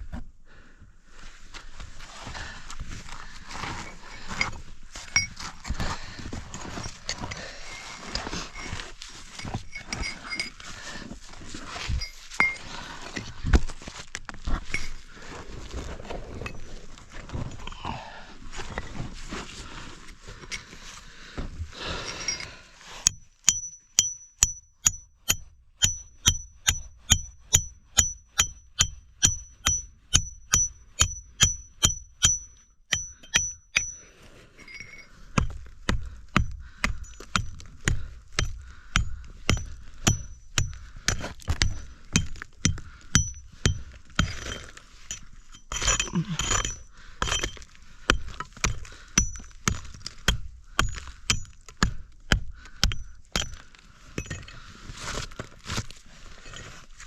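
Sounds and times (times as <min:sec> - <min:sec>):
steel tool striking rock: 0:03.9 - 0:05.8, 0:06.5 - 0:10.7, 0:11.9 - 0:13.6, 0:14.7 - 0:15.0, 0:22.0 - 0:54.6.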